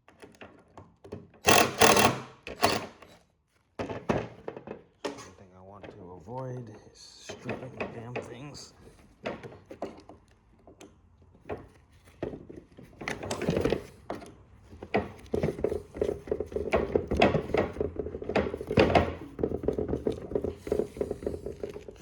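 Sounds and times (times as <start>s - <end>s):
screwdriver clicking and grinding: 1.4s - 3.1s.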